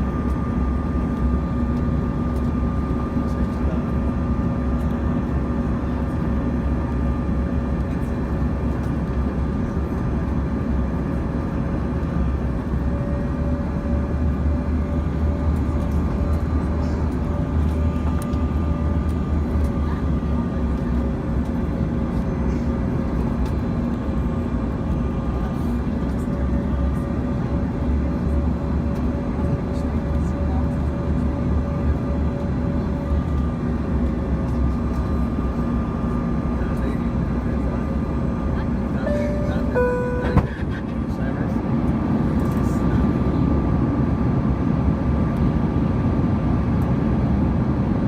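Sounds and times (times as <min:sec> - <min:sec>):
jet engines humming: 0:31.2 - 0:42.4.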